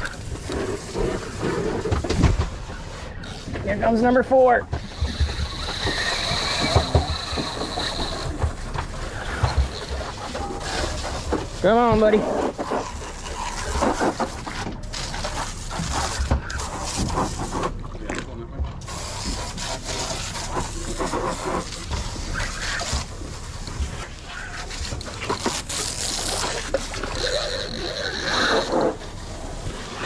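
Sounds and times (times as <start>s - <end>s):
fishing reel clicking and whirring: 4.8s - 8.4s, 25.7s - 28.9s.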